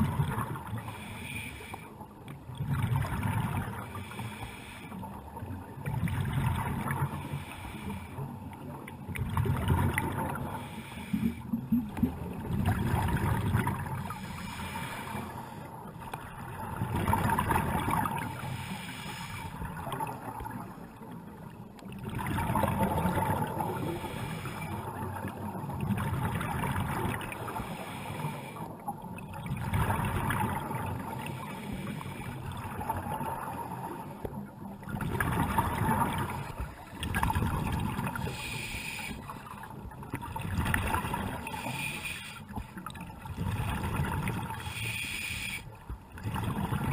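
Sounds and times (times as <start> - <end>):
diver breathing through regulator: 0.7 - 2.0, 3.8 - 5.2, 7.1 - 8.4, 10.4 - 11.9, 14.0 - 15.7, 18.3 - 19.6, 23.8 - 24.9, 27.4 - 28.8, 31.2 - 32.5, 38.2 - 39.5, 41.4 - 42.8, 44.5 - 45.7
bubbles gurgling underwater: 2.4 - 3.8, 8.9 - 10.4, 11.5 - 14.2, 16.4 - 18.3, 21.9 - 23.8, 25.0 - 27.4, 29.2 - 31.3, 34.8 - 38.5, 39.4 - 41.8, 42.6 - 44.7, 45.9 - 46.9.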